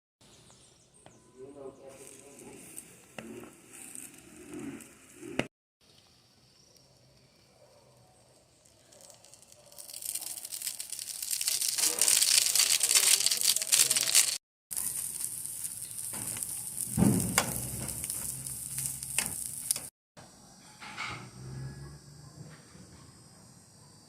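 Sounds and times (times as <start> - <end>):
omelette sizzling in a pan: 8.1 - 19.9.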